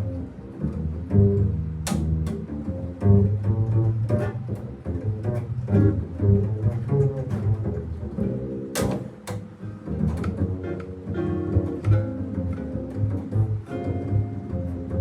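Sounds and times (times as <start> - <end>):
bass line: 0.0 - 15.0.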